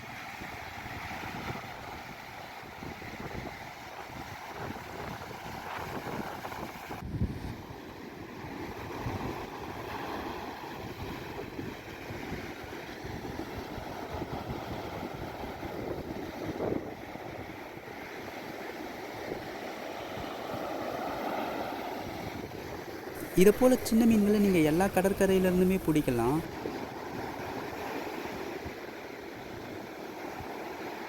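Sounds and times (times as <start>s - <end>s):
surf washing on a beach: 0.0s - 31.0s
wind buffeting microphone: 0.4s - 17.7s.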